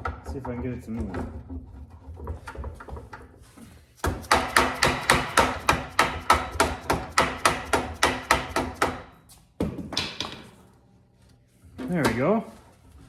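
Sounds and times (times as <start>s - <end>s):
hammer tapping on metal: 4.0s - 9.0s.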